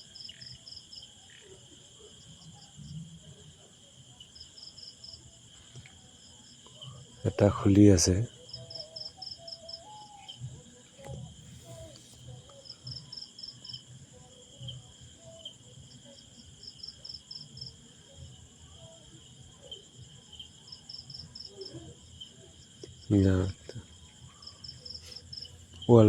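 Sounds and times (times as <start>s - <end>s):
insects chirping: 0.0s - 26.0s.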